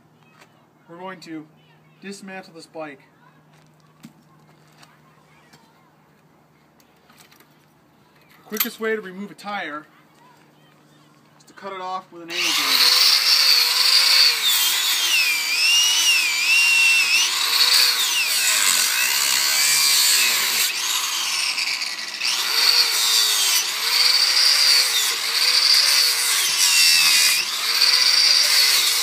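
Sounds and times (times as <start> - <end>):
angle grinder cutting rubber tire: 12.2 - 29.0.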